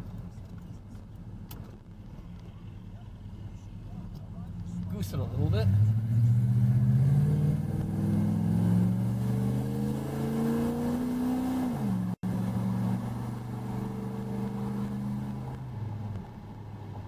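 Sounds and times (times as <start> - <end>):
car engine accelerating: 3.6 - 17.0.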